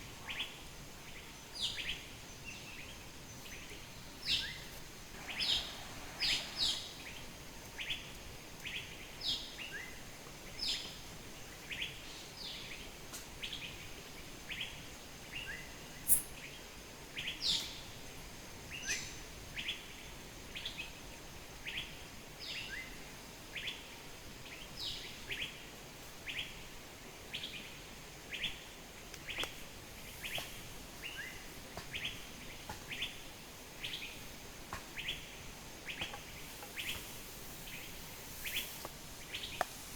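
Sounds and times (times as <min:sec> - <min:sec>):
faint steady hiss: 0:00.0 - 0:39.9
bird chirping: 0:01.1 - 0:10.0, 0:15.3 - 0:16.6.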